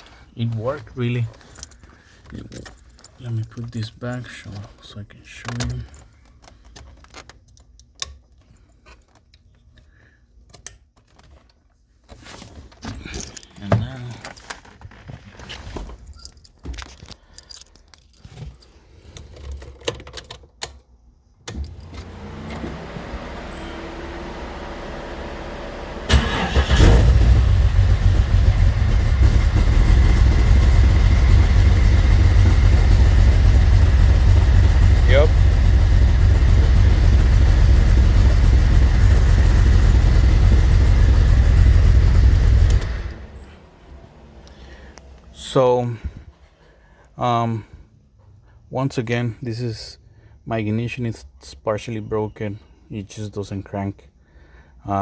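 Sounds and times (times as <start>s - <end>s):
keys rattling: 0.6s - 12.1s, 12.8s - 21.0s
car engine starting and running: 21.5s - 46.2s.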